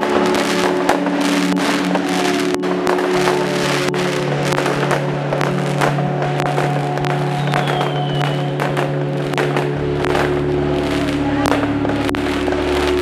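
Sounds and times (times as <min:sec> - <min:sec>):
fireworks popping and crackling: 0:00.0 - 0:13.0
music with long held tones: 0:00.0 - 0:13.0.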